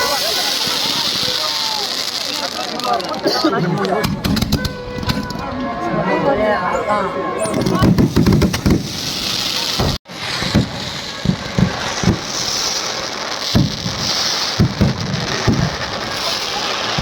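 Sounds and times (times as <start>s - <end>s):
firecrackers fizzing crackle: 0.0s - 5.5s, 7.5s - 17.0s
sharp firecracker pops: 3.8s - 5.3s, 7.6s - 9.0s, 9.8s - 12.8s, 13.4s - 17.0s.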